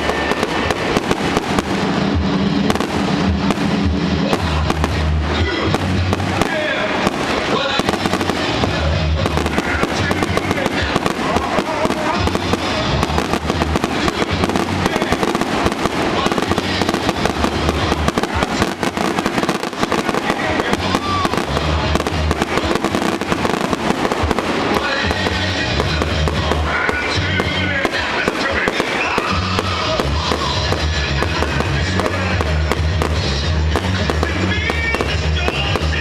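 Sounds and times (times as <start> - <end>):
fireworks bangs and crackling: 0.0 - 36.0.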